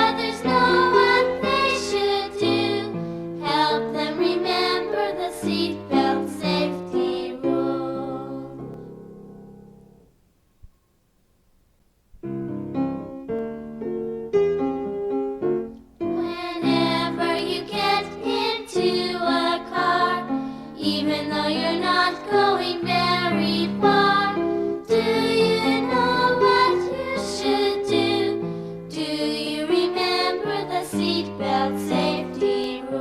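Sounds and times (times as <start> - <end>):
children's song with singing: 0.0 - 8.9, 16.1 - 33.0.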